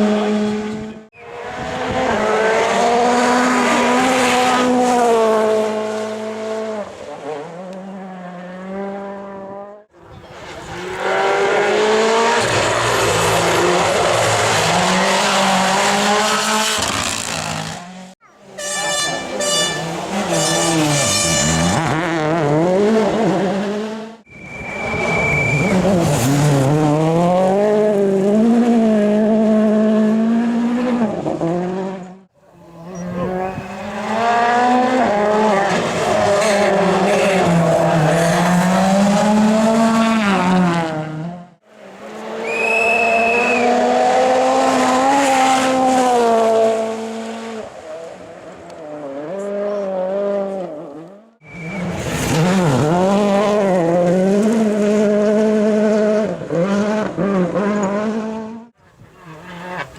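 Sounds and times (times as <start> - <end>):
rally car engines revving: 0.0 - 59.9
high whistle: 24.3 - 25.8, 42.4 - 43.8, 51.4 - 52.0.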